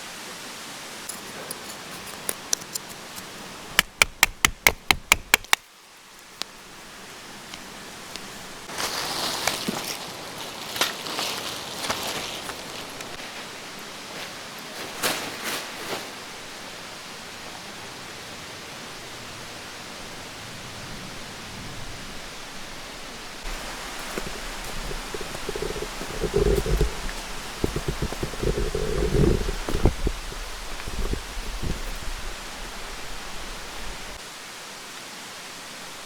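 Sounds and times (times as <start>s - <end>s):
rustling: 6.2s - 16.5s, 23.2s - 34.2s
mountain stream rushing: 6.6s - 36.0s.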